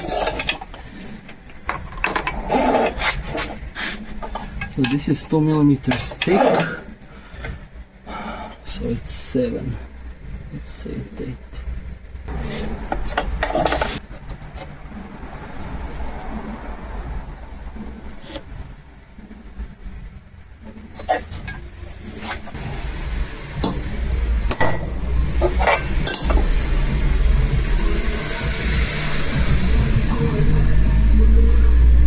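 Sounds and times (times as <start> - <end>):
steel pieces clinking and scraping: 0.0 - 6.8, 12.3 - 14.7, 20.7 - 22.6, 24.5 - 26.6
steady low hum: 0.0 - 32.0.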